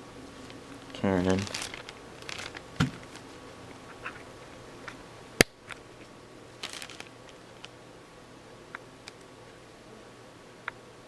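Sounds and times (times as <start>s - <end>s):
packaging rustling and clicks: 0.5s - 3.4s, 6.6s - 7.8s
soft thump: 2.8s - 3.2s.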